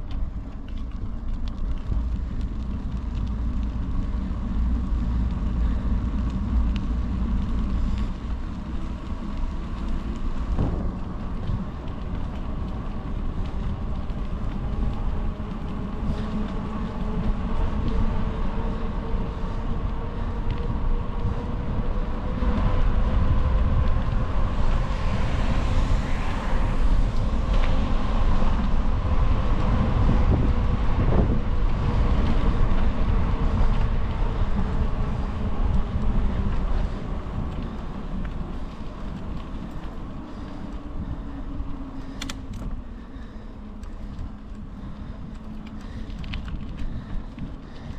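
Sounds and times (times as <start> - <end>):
wind buffeting microphone: 0.0 - 47.9.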